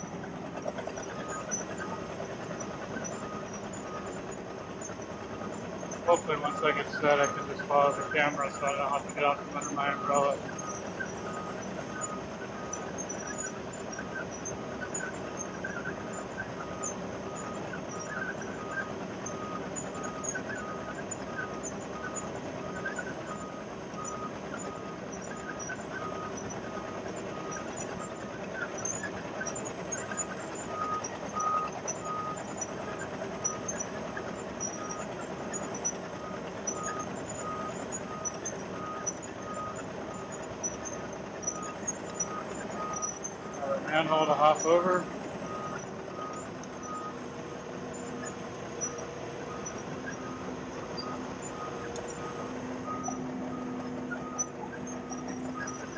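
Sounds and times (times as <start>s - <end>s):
diesel engine running: 0.0s - 55.9s
backup alarm beeping: 5.6s - 15.0s, 34.6s - 55.9s.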